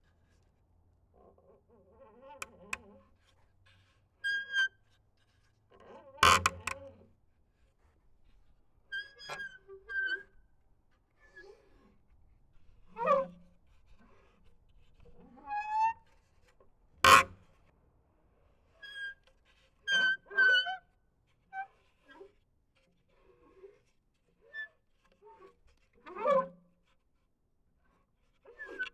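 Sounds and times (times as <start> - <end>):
wooden planks creaking: 6.2 - 6.8, 17.1 - 17.3.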